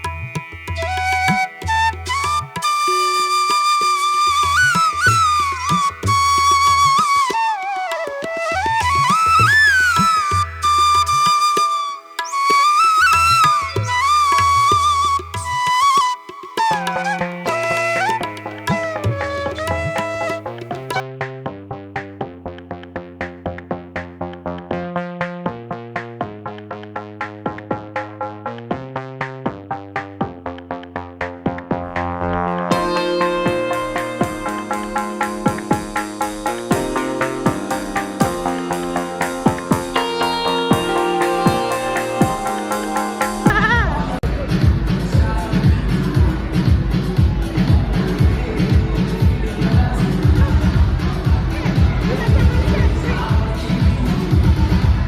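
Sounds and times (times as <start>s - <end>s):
sliding melody over bass beat: 12.2s - 21.0s, 23.4s - 44.2s.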